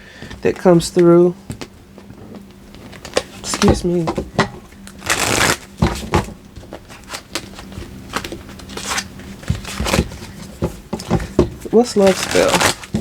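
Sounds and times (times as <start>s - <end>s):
cards slapping and rustling: 2.8s - 4.3s, 4.9s - 13.0s.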